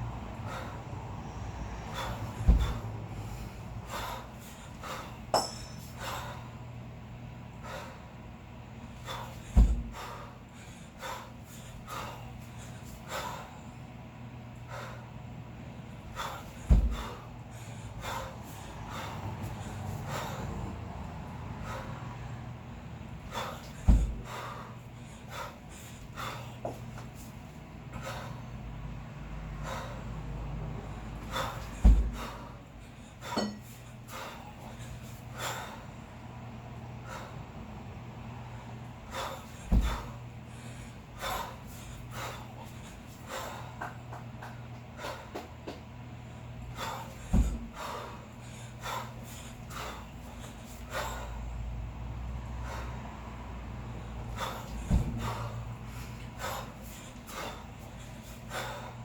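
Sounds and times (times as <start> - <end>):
sharp rhythmic exhales: 0.0 - 59.0
heavy low thud: 2.2 - 3.1, 9.5 - 10.0, 16.6 - 17.2, 23.8 - 24.3, 31.7 - 32.4, 39.6 - 40.2, 47.2 - 47.9, 54.7 - 55.5
heavy low thump: 2.3 - 3.1, 9.5 - 10.0, 16.6 - 17.2, 23.8 - 24.3, 31.7 - 32.4, 39.6 - 40.2, 47.2 - 47.8, 54.7 - 55.5.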